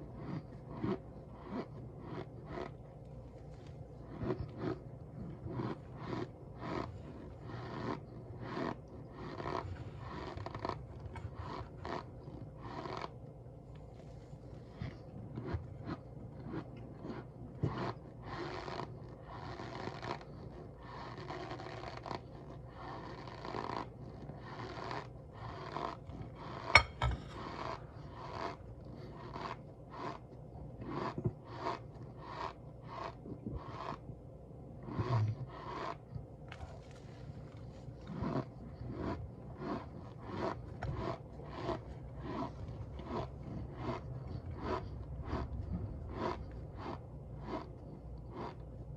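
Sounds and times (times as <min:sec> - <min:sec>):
cornstarch crunching and squeaking: 0:15.4 - 0:26.6.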